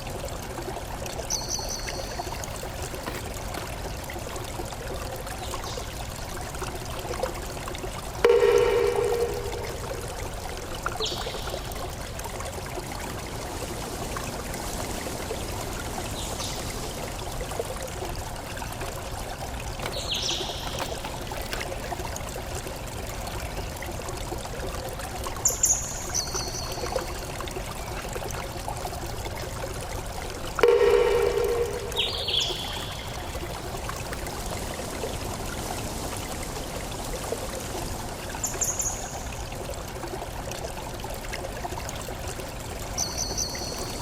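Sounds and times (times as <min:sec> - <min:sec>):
water trickling: 0:00.0 - 0:44.0.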